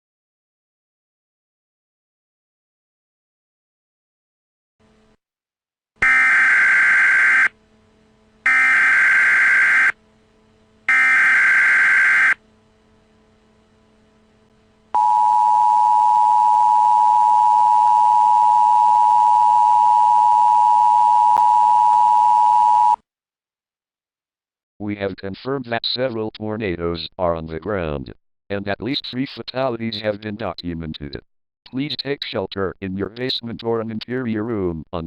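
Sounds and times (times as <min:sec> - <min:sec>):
harsh buzzing data bursts: 0:06.0 - 0:07.6, 0:08.4 - 0:10.0, 0:10.8 - 0:12.5
two-tone attention signal: 0:08.5 - 0:10.0, 0:10.9 - 0:12.4, 0:15.0 - 0:23.0.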